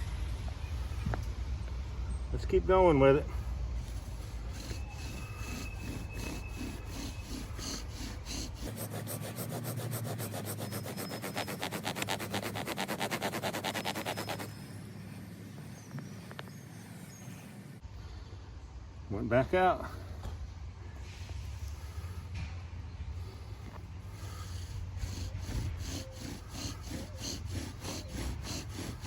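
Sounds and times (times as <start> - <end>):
bow drill spindle grinding: 3.8 - 15.2, 24.1 - 29.0.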